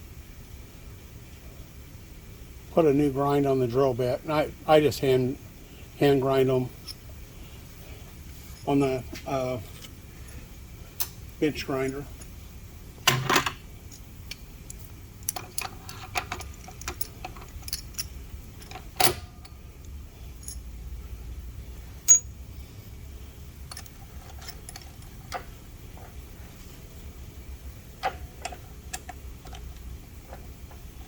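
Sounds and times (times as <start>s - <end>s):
faint low hum: 0.0s - 31.0s
metal tools clinking: 15.2s - 19.6s, 20.4s - 20.7s, 22.1s - 22.3s, 23.7s - 26.2s.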